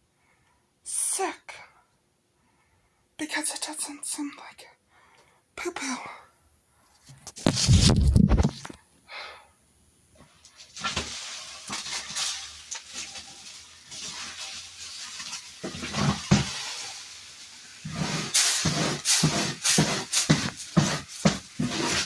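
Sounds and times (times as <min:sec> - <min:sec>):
cat litter scraping and rattling: 0:10.5 - 0:16.8, 0:17.8 - 0:22.0.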